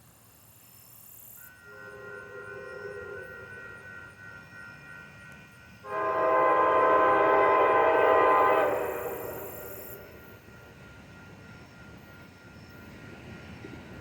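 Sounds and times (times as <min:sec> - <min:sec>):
locomotive air horn chord: 0:01.4 - 0:04.7, 0:05.8 - 0:10.4.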